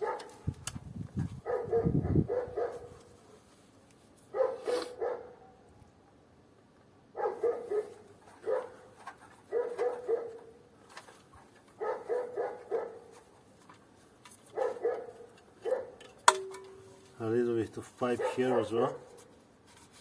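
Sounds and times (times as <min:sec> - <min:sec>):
dog barking: 0:00.0 - 0:00.4, 0:01.4 - 0:03.0, 0:04.3 - 0:05.6, 0:07.1 - 0:08.9, 0:09.5 - 0:10.6, 0:11.8 - 0:13.1, 0:14.5 - 0:16.0, 0:18.1 - 0:19.2.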